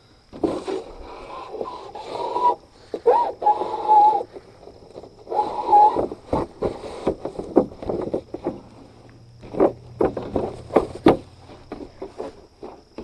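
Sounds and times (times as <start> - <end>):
low hum: 7.4 - 12.6.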